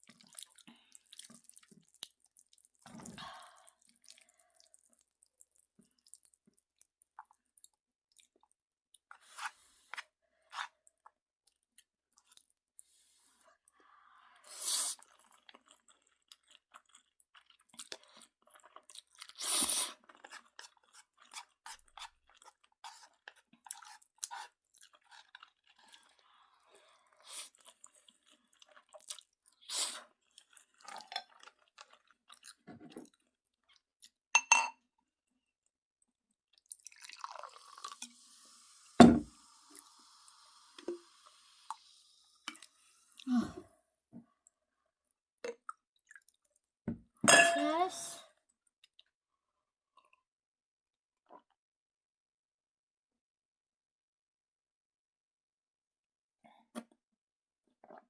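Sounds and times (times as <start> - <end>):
person chewing noodles: 0.0 - 6.4, 15.0 - 34.2, 45.5 - 46.5.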